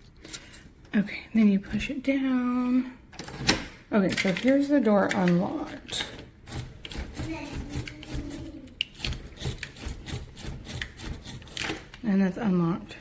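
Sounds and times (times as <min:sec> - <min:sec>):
knocks and rubs on door: 0:06.5 - 0:08.5.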